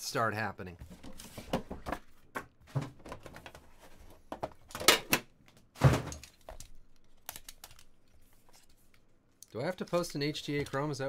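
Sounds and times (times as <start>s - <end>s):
cards and packaging handled on table: 6.2s - 11.0s.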